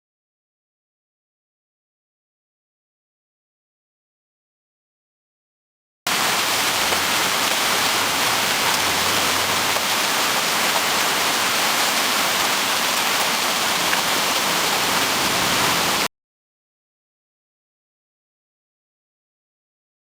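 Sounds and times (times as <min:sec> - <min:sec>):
heavy rain pouring: 0:06.1 - 0:16.1.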